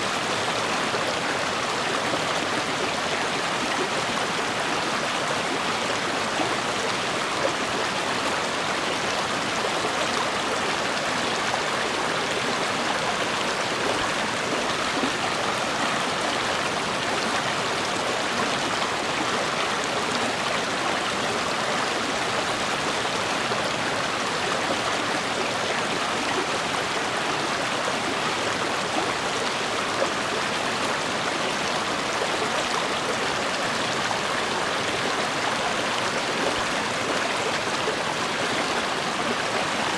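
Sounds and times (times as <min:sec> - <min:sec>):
river water rushing over rocks: 0:00.0 - 0:39.9.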